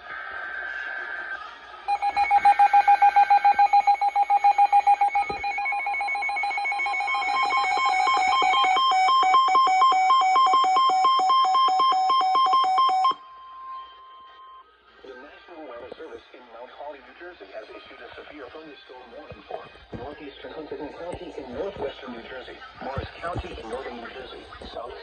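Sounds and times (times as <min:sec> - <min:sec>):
rapid electronic beeps: 0:01.9 - 0:14.6.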